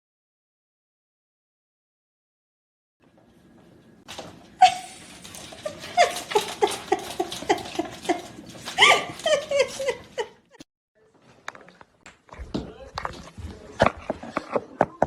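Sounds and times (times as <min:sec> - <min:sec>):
dog yipping: 0:04.6 - 0:06.8.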